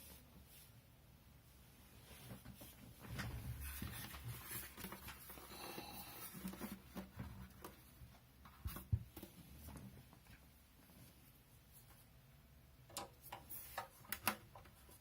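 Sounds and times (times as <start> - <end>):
rustling: 1.9 - 8.0.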